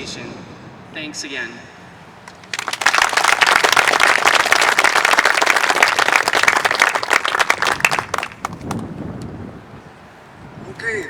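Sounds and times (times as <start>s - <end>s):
audience applauding: 2.3s - 8.9s.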